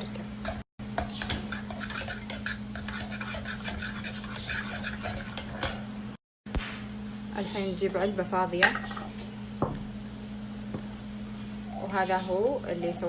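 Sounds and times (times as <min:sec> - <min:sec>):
utensil stirring and scraping a pot: 0:00.0 - 0:05.9
steady low hum: 0:00.0 - 0:13.0.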